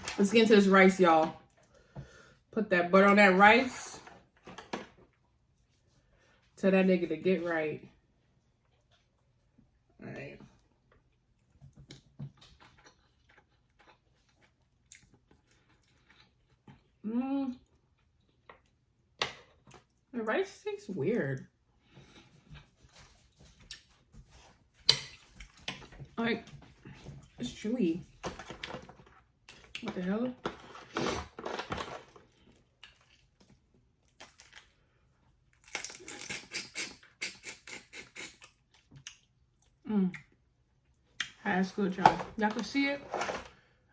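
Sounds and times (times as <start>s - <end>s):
person chewing and lip-smacking: 35.7s - 40.4s.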